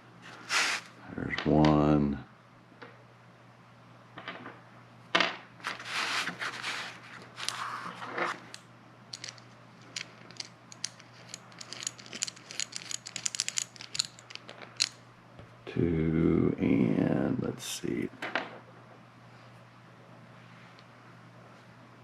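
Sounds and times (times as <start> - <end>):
metal parts rustling and scraping: 9.1 - 15.0
small metal clicks: 9.1 - 15.0.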